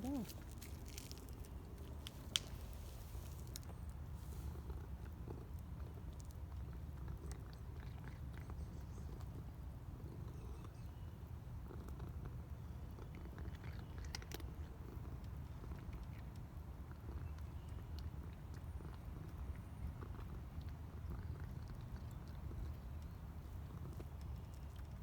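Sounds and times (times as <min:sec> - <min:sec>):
cat purring: 0:00.0 - 0:10.9.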